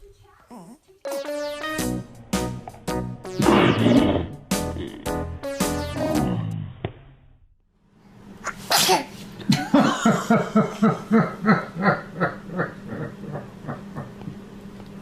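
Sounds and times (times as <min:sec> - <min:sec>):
baby sneezing: 0:08.4 - 0:09.2.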